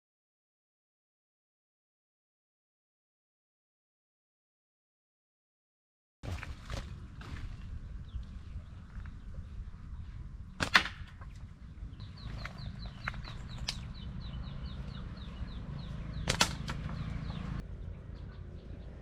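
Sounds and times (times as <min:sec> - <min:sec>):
low steady rumble: 0:06.3 - 0:19.0
bird calling falling notes: 0:10.5 - 0:17.6
sharp knocks: 0:16.2 - 0:17.0.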